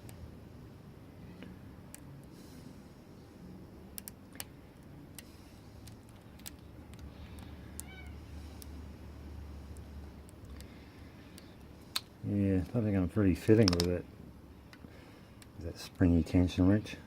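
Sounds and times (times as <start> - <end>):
cat meowing: 7.8 - 8.2
lock pick metallic clicks: 13.6 - 13.9.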